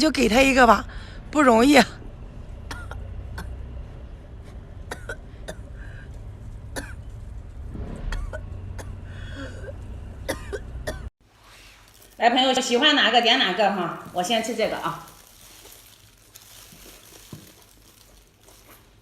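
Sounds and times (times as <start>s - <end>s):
low hum: 0.1s - 11.1s
person coughing and throat-clearing: 2.7s - 3.6s, 4.9s - 5.7s, 6.7s - 7.1s, 8.1s - 11.1s.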